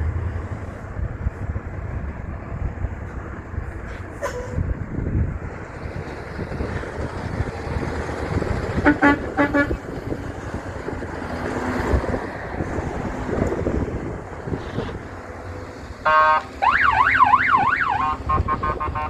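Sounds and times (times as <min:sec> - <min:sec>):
truck passing rumble: 0:00.0 - 0:19.0
truck horn short toots: 0:08.8 - 0:09.8, 0:16.0 - 0:16.5, 0:17.8 - 0:19.0.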